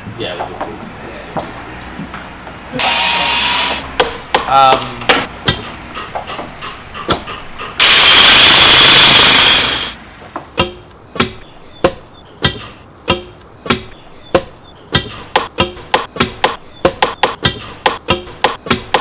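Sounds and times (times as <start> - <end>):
loud hiss: 2.8 - 3.8, 7.8 - 10.0
sharp ringing knocks: 10.6 - 19.0.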